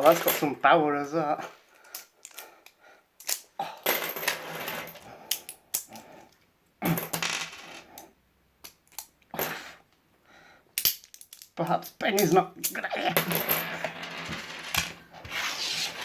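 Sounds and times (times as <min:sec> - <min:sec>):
coins clicking onto a magnet: 0:10.8 - 0:11.6.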